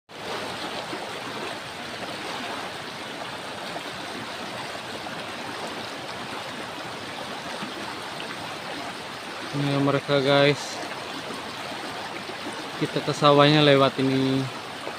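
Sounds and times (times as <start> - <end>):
river water flowing over stones: 0.1 - 14.9.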